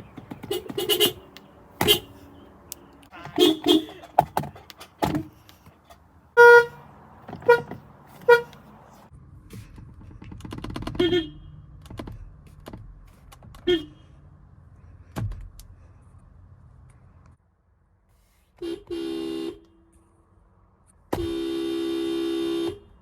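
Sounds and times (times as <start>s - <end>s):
car horn toots: 0.0s - 2.6s, 3.2s - 4.4s, 6.4s - 8.6s, 10.8s - 11.6s, 13.6s - 14.1s, 18.6s - 19.8s, 21.2s - 23.0s
sharp clicks or thumps: 2.7s - 6.0s.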